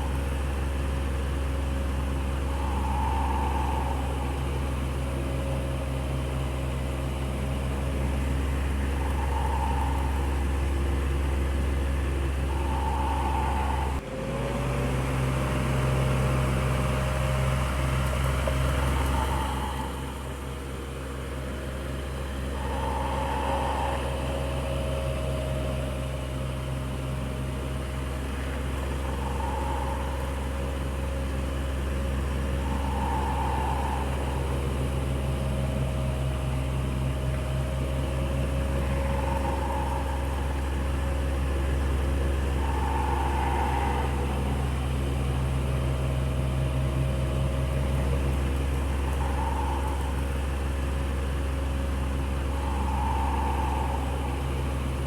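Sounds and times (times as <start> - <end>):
electric fan humming: 0.0 - 14.0.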